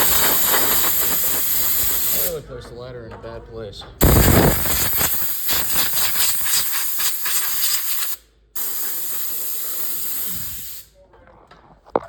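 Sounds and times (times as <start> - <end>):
air blow gun hissing: 0.0 - 2.4, 4.0 - 10.9.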